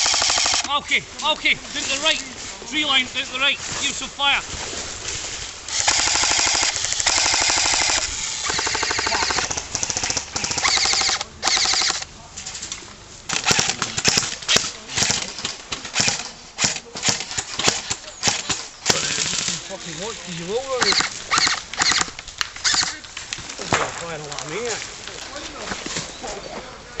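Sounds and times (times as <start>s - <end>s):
airsoft guns firing bursts: 0.0s - 0.8s, 5.7s - 12.0s, 13.3s - 19.7s, 20.7s - 23.0s
single airsoft shots: 20.8s - 23.0s.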